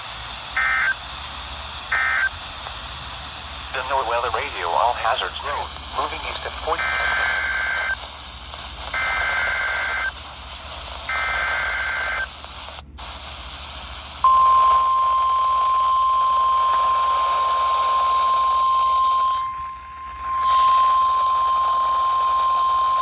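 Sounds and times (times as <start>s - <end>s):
radio static: 0.0s - 23.0s
steady warning alarm tone: 0.6s - 1.0s, 1.9s - 2.4s, 8.9s - 10.2s, 14.2s - 23.0s
warbling digital data screech: 15.5s - 23.0s.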